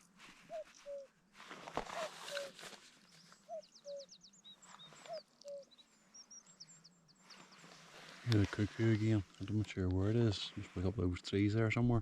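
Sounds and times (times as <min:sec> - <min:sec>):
rustling noise: 0:00.0 - 0:03.5, 0:07.2 - 0:11.0
cuckoo calling: 0:00.0 - 0:08.3
small bird chirping: 0:00.5 - 0:01.2, 0:02.0 - 0:08.3.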